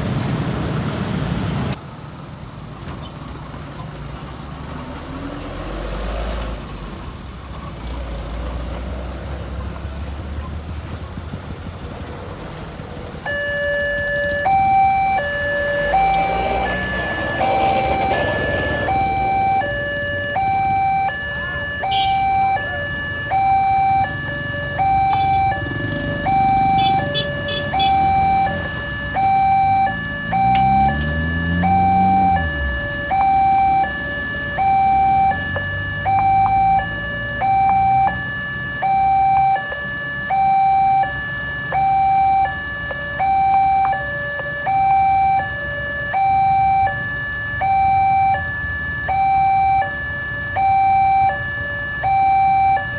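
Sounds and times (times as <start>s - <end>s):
low traffic noise: 0.0s - 52.9s
engine revving: 4.4s - 7.1s, 14.0s - 39.1s
level crossing two-tone alarm: 13.3s - 52.9s.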